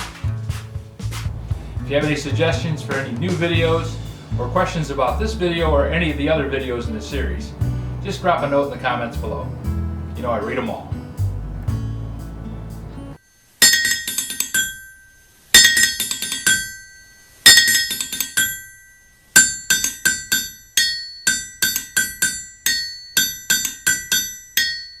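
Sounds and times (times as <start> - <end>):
outro music: 0.0 - 13.2.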